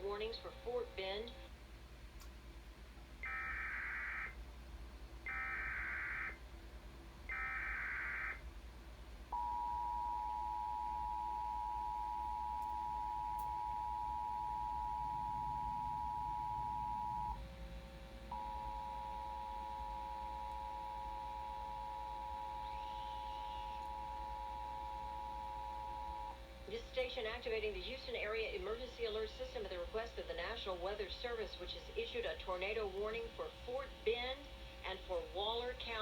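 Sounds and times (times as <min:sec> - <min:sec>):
lower steady tone: 0:09.3 - 0:29.1.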